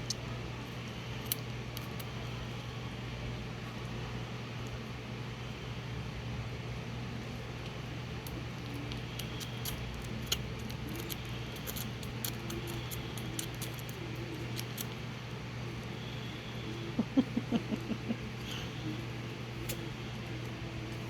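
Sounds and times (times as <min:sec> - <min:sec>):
squirrel feeding wet clicks: 0:00.0 - 0:02.8, 0:07.5 - 0:21.0
steady low hum: 0:00.0 - 0:21.0.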